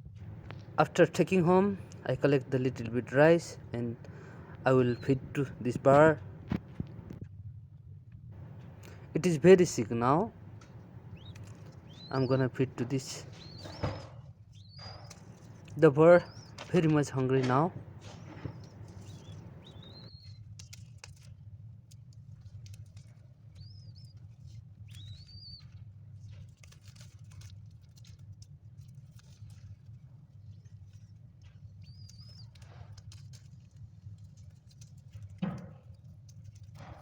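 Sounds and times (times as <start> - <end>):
baby dove squeaking: 8.4 - 20.2
small clicks and taps: 10.3 - 12.2.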